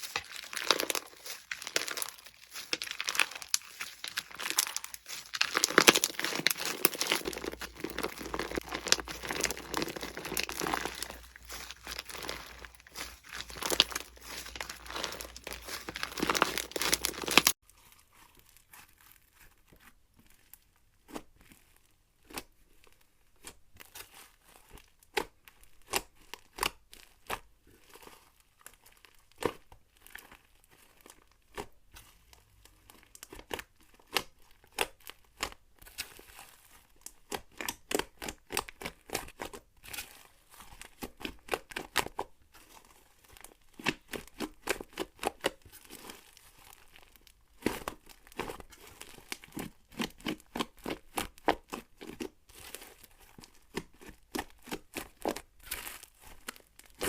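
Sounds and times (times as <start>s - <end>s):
slime crackling crunch: 0.0s - 17.6s, 32.8s - 57.0s.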